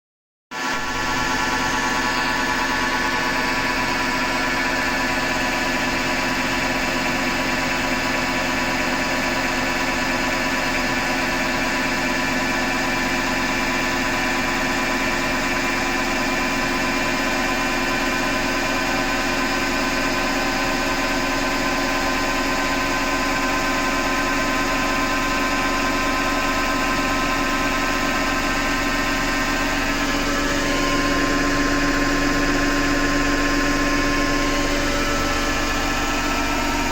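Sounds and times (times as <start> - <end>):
washing machine grinding whine: 0.7 - 36.9.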